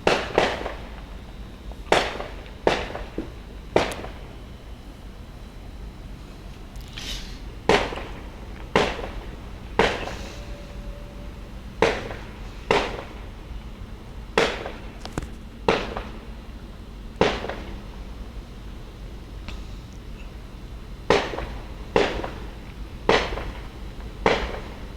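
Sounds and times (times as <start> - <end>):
fireworks exploding with sharp bangs: 0.0 - 1.2, 1.9 - 4.3, 7.7 - 10.5, 11.8 - 13.4, 14.4 - 16.4, 17.2 - 18.0, 21.1 - 24.9.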